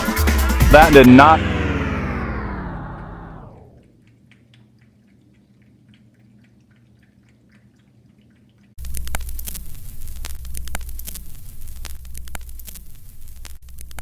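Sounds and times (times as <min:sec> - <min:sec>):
low hum: 0:00.2 - 0:04.0
loud electrical hum with static: 0:00.4 - 0:03.7, 0:08.8 - 0:14.0.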